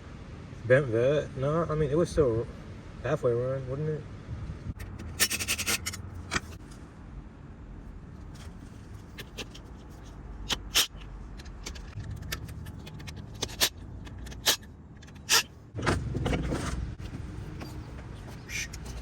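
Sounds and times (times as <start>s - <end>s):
metal parts clanking: 4.8s - 6.6s, 10.5s - 16.8s
metal scraping and rattling: 4.8s - 6.8s, 8.2s - 19.0s.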